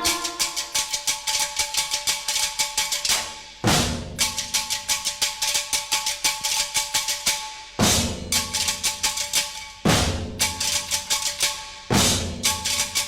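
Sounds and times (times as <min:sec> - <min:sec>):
fast drumming: 0:00.0 - 0:13.0.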